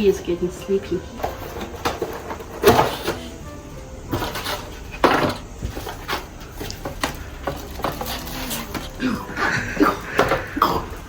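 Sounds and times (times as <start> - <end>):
handling clicks and knocks: 1.2 - 9.0
baby whimpering cries: 8.2 - 11.0.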